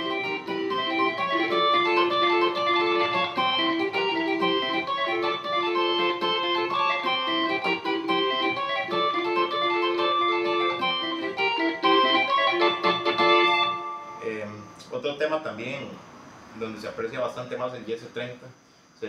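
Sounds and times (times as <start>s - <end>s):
organ playing merengue melody: 0.0s - 14.7s.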